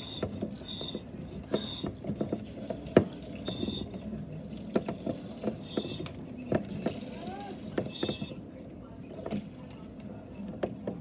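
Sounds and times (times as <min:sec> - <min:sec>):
hand pump clicks and knocks: 0:00.0 - 0:03.7, 0:04.7 - 0:07.0.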